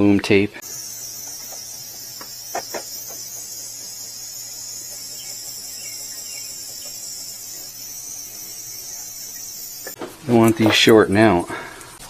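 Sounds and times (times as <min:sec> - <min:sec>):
heat tool hissing: 0:00.6 - 0:10.0.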